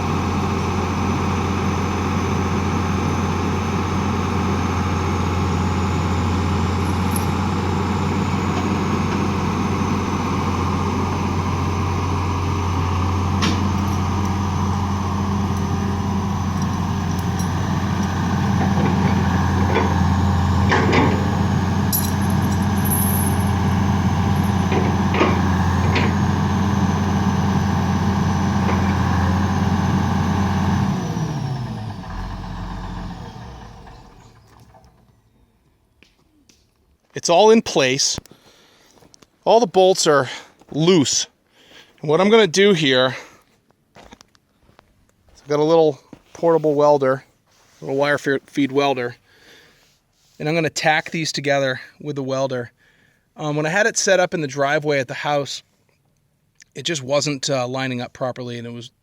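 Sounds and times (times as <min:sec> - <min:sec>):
engine winding down: 0:00.0 - 0:35.6
engine running: 0:00.0 - 0:36.1.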